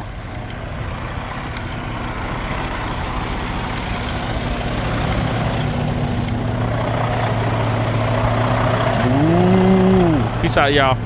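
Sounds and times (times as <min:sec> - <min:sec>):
truck engine droning: 0:00.0 - 0:11.0.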